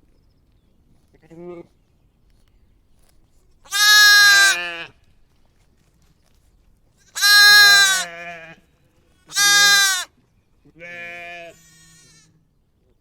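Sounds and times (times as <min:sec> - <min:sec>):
sheep or goat bleating: 0:03.7 - 0:05.0, 0:07.1 - 0:08.6, 0:09.3 - 0:10.1, 0:10.7 - 0:12.3.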